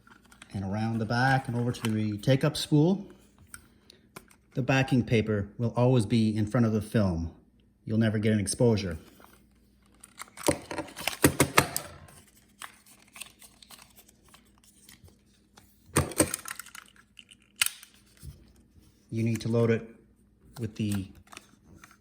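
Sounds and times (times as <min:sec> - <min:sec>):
paper rustling: 0:09.0 - 0:19.6.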